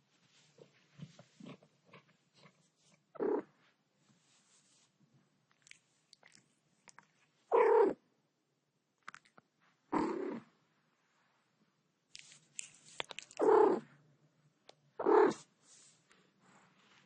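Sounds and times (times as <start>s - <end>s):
cat purring loudly: 1.4s - 3.6s, 7.5s - 8.0s, 9.9s - 10.5s, 13.2s - 13.9s, 15.0s - 15.5s.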